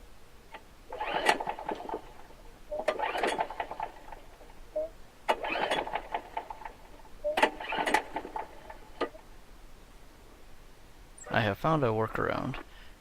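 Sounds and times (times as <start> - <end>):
lawn mower recoil starter pulls: 0.5 - 9.2.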